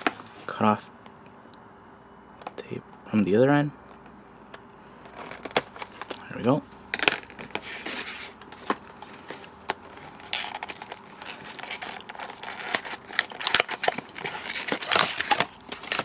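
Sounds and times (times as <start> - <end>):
cardboard packaging rustling: 5.0 - 6.1, 7.0 - 16.0.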